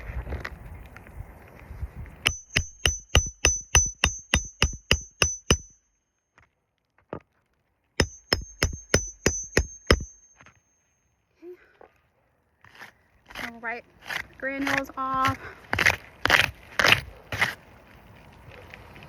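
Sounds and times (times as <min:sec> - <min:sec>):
hammer striking nails: 0:02.2 - 0:05.9, 0:08.0 - 0:10.6.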